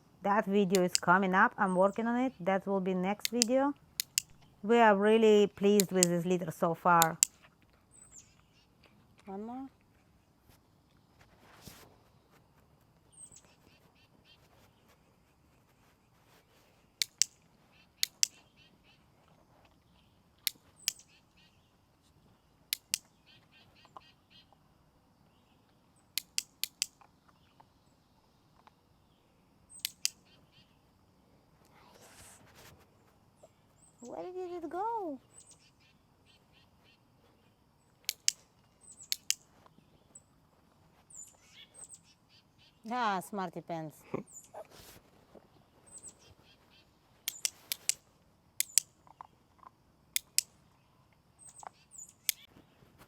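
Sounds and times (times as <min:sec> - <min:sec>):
dog-training clicker clicking: 0:00.7 - 0:01.1, 0:03.1 - 0:04.5, 0:05.7 - 0:06.3, 0:06.9 - 0:07.4, 0:17.0 - 0:17.3, 0:18.0 - 0:18.4, 0:26.2 - 0:27.1, 0:38.1 - 0:38.4, 0:39.1 - 0:39.4, 0:47.3 - 0:48.0.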